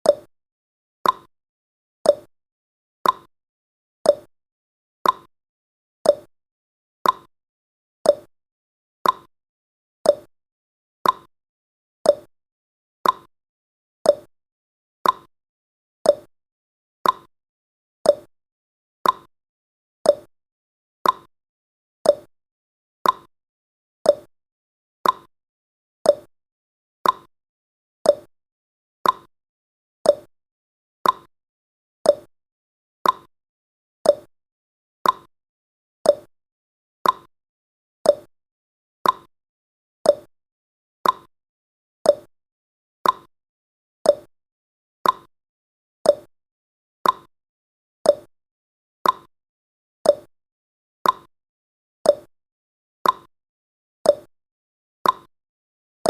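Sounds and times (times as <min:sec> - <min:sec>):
timer ticking: 0:00.0 - 0:00.3, 0:01.0 - 0:01.3, 0:02.1 - 0:02.3, 0:03.0 - 0:03.3, 0:04.1 - 0:04.3, 0:05.0 - 0:05.3, 0:06.1 - 0:06.3, 0:07.0 - 0:07.3, 0:08.1 - 0:08.3, 0:09.0 - 0:09.3, 0:10.1 - 0:10.3, 0:11.0 - 0:11.3, 0:12.1 - 0:12.3, 0:13.0 - 0:13.3, 0:14.1 - 0:14.3, 0:15.0 - 0:15.3, 0:16.1 - 0:16.3, 0:17.0 - 0:17.3, 0:18.1 - 0:18.3, 0:19.0 - 0:19.3, 0:20.1 - 0:20.3, 0:21.0 - 0:21.3, 0:22.0 - 0:22.3, 0:23.0 - 0:23.3, 0:24.1 - 0:24.3, 0:25.0 - 0:25.3, 0:26.1 - 0:26.3, 0:27.0 - 0:27.3, 0:28.0 - 0:28.3, 0:29.0 - 0:29.3, 0:30.0 - 0:30.3, 0:31.0 - 0:31.3, 0:32.0 - 0:32.3, 0:33.0 - 0:33.3, 0:34.0 - 0:34.3, 0:35.0 - 0:35.3, 0:36.0 - 0:36.3, 0:37.0 - 0:37.3, 0:38.0 - 0:38.3, 0:39.0 - 0:39.3, 0:40.0 - 0:40.3, 0:41.0 - 0:41.3, 0:42.1 - 0:42.3, 0:43.0 - 0:43.3, 0:44.1 - 0:44.3, 0:45.0 - 0:45.3, 0:46.1 - 0:46.3, 0:47.0 - 0:47.3, 0:48.1 - 0:48.3, 0:49.0 - 0:49.3, 0:50.1 - 0:50.3, 0:51.0 - 0:51.3, 0:52.1 - 0:52.3, 0:53.0 - 0:53.3, 0:54.1 - 0:54.3, 0:55.0 - 0:55.3.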